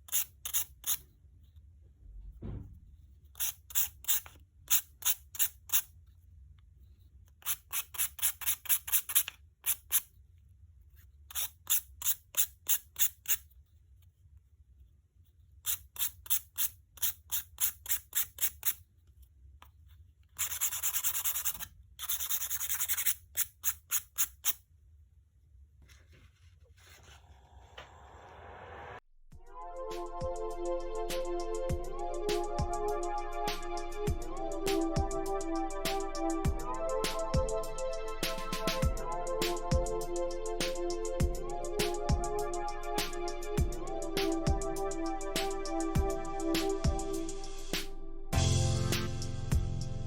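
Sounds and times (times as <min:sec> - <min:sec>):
nail file rasping on fingernail: 0:00.0 - 0:01.0, 0:03.4 - 0:05.9, 0:07.4 - 0:10.1, 0:11.3 - 0:13.5, 0:15.6 - 0:18.8, 0:20.4 - 0:24.6.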